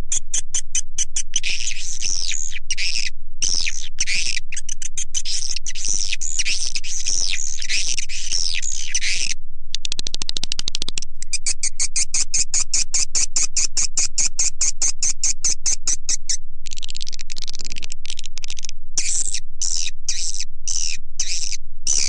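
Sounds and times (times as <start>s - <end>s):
swiftlet chirps and twitters: 19.0s - 22.0s.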